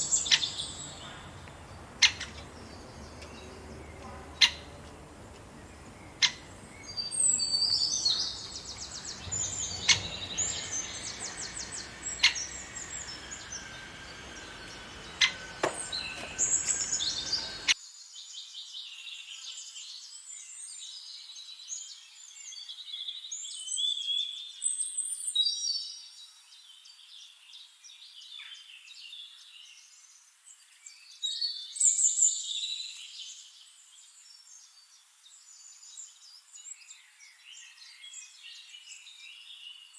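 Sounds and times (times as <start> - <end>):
low background rumble: 0.0 - 17.8
songbirds chirping and trilling: 0.0 - 39.9.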